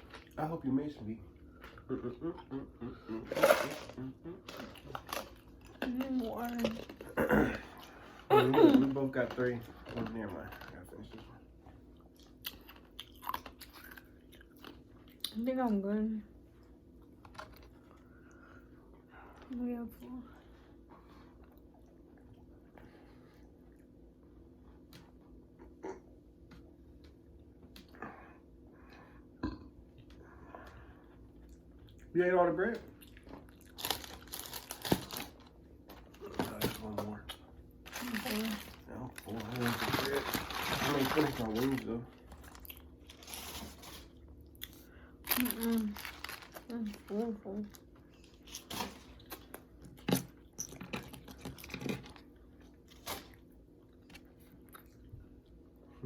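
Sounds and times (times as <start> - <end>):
soft chewing: 4.2 - 15.8, 16.4 - 39.9, 40.5 - 56.0
chewing and biting: 9.2 - 15.4, 47.7 - 55.6.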